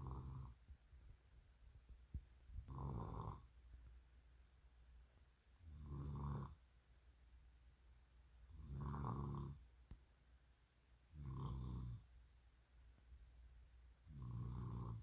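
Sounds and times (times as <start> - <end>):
low snoring: 0.0 - 0.6, 2.6 - 3.5, 5.6 - 6.6, 8.5 - 9.6, 11.1 - 12.1, 14.0 - 15.0.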